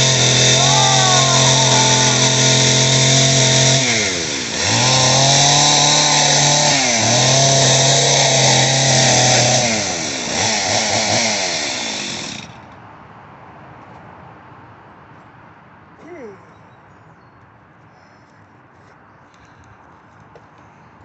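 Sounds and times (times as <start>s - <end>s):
chainsaw running at full throttle: 0.0s - 12.7s.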